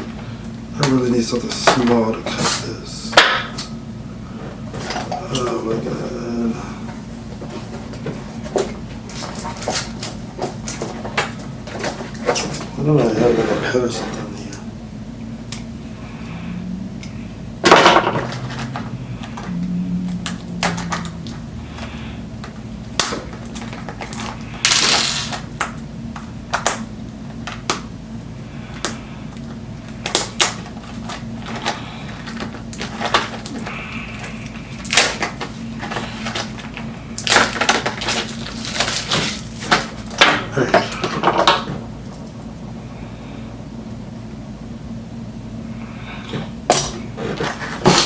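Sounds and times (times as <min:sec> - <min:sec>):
steady low hum: 0:00.0 - 0:48.0
crinkling rustles: 0:06.8 - 0:14.5, 0:29.4 - 0:42.5
packaging being torn open: 0:23.0 - 0:25.4, 0:30.1 - 0:40.2.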